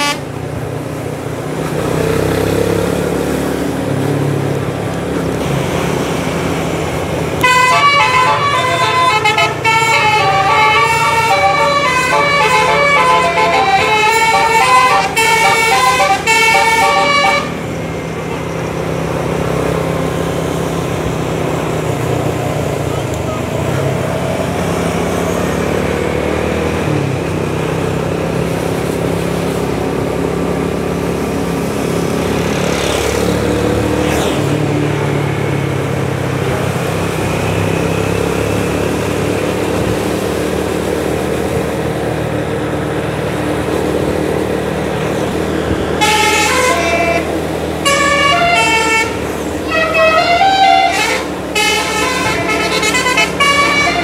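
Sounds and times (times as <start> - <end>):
musical air horn melody: 0.0 - 0.3, 7.4 - 17.7, 46.0 - 54.0
heavy vehicle engine running: 0.0 - 54.0.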